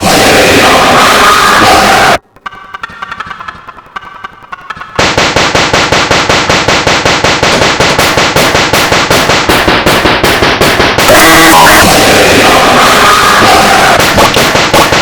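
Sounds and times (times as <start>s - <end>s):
rapid noisy bursts: 5.0s - 15.0s.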